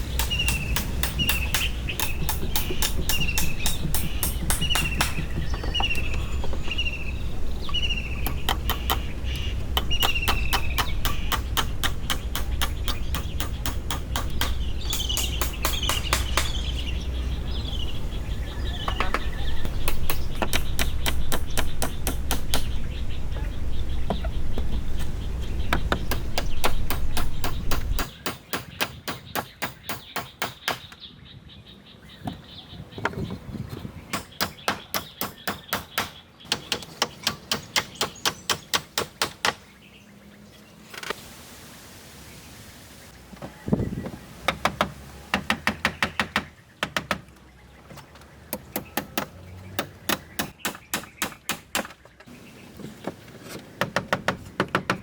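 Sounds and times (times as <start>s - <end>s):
hand tool knocking: 0.2s - 6.7s, 9.8s - 16.6s
low steady rumble: 5.0s - 28.0s.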